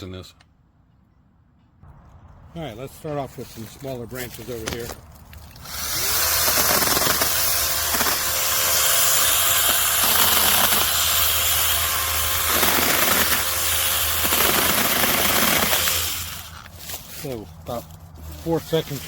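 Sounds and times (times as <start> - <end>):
mini chainsaw cutting branch: 5.6 - 16.7.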